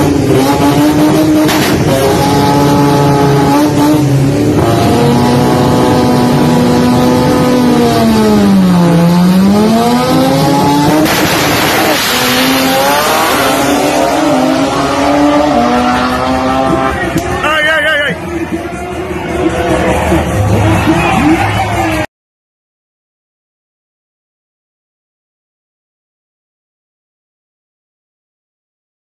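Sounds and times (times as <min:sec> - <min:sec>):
car engine at high revs: 0:00.0 - 0:17.5.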